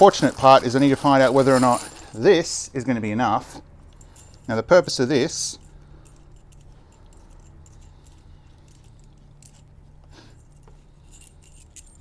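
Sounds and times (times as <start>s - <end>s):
metal bolts and washers clinking: 0.0s - 2.6s.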